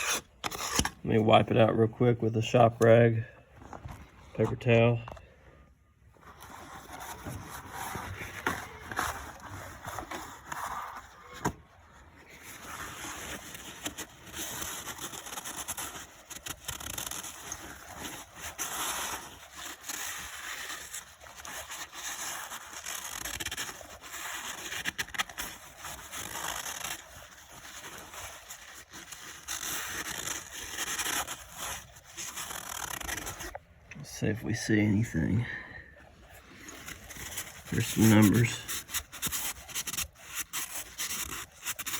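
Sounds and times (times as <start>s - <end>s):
paper towel rubbing on metal: 12.3s - 33.6s, 36.7s - 41.9s.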